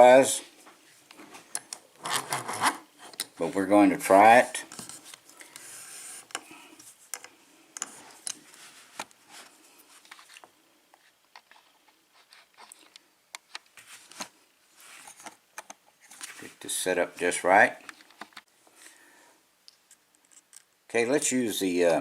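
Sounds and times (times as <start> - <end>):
tools scraping in lock: 2.0 - 2.8.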